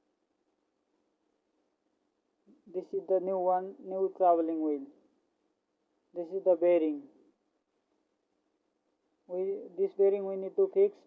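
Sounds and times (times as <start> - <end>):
person speaking: 2.5 - 5.0, 6.2 - 7.2, 9.3 - 11.0.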